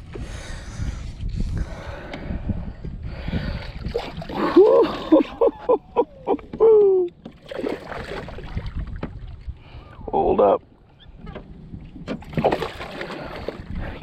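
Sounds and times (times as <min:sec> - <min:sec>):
fish splashing in water: 0:12.3 - 0:13.6.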